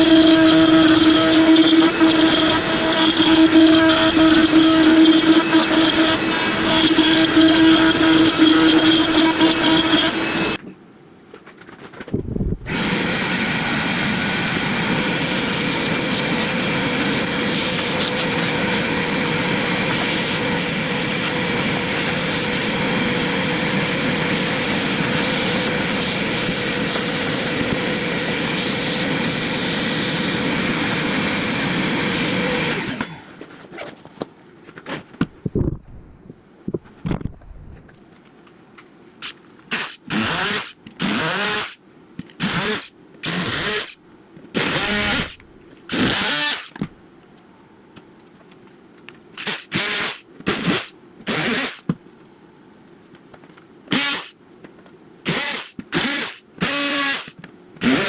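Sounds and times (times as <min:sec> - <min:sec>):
router bit cutting wood: 0:00.0 - 0:10.6, 0:12.7 - 0:33.2, 0:39.7 - 0:41.8, 0:42.4 - 0:44.0, 0:44.6 - 0:46.7, 0:49.4 - 0:51.8, 0:53.9 - 0:54.3, 0:55.3 - 0:58.0.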